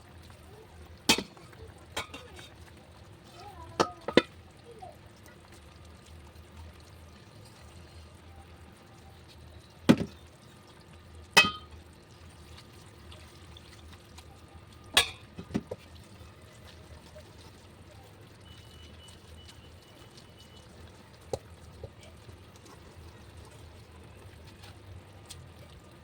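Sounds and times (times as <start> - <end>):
kitchenware clacking: 1.1 - 1.4, 2.0 - 2.5, 3.8 - 4.3, 11.4 - 11.7, 15.0 - 15.7.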